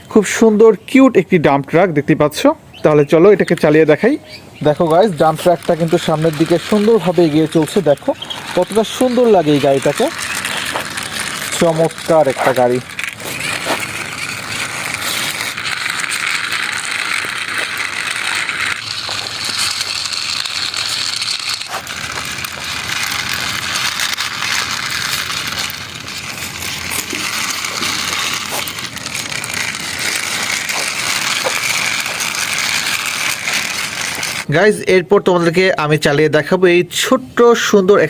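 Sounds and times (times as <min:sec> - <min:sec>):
toy truck wheels whirring: 0:03.5 - 0:34.5
small clicks and rattles: 0:04.7 - 0:34.5.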